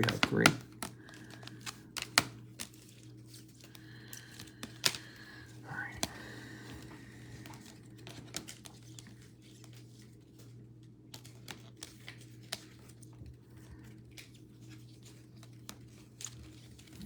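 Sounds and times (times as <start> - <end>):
steady low hum: 0.0 - 11.1
trading cards clicking and tapping: 0.0 - 17.0.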